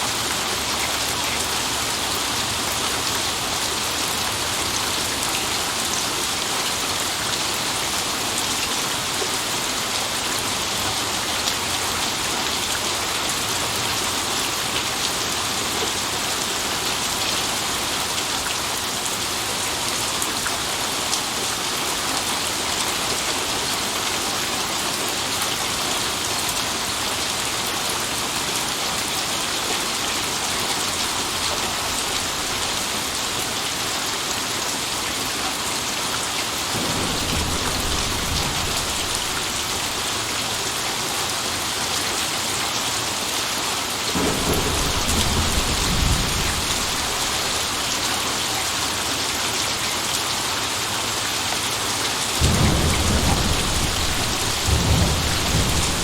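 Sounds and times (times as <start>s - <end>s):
steady rain hissing: 0.0s - 56.0s
thunder rolling: 30.6s - 34.0s, 36.7s - 40.8s, 44.2s - 48.4s, 52.4s - 56.0s.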